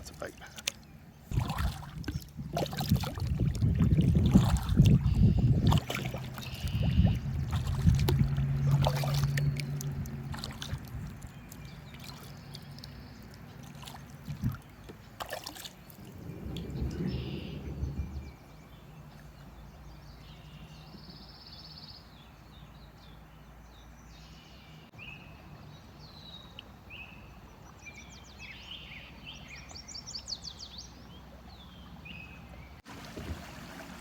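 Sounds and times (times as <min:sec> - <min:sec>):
paddle blades splashing: 0:00.0 - 0:19.5, 0:32.8 - 0:34.0
water dripping: 0:00.6 - 0:18.4
low rumble: 0:15.8 - 0:18.8.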